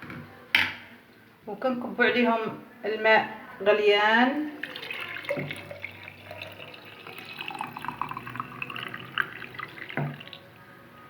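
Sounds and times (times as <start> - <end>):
water poured into a glass jar: 4.5 - 10.5.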